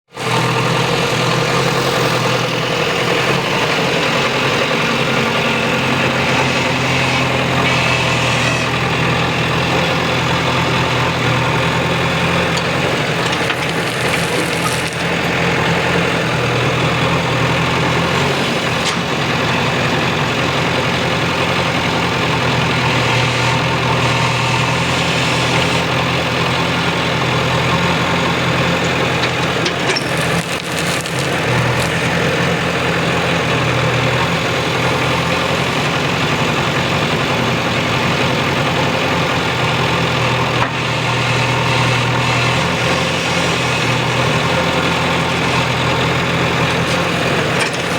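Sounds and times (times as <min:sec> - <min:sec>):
diesel engine running: 0:00.1 - 0:47.9.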